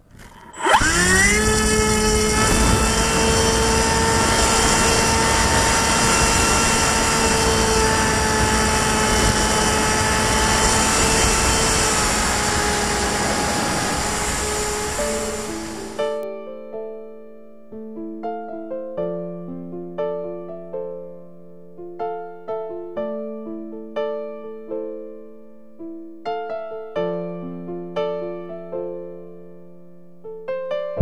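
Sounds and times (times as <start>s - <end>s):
model plane motor high whine: 0.0s - 16.2s
rushing air: 0.0s - 16.2s.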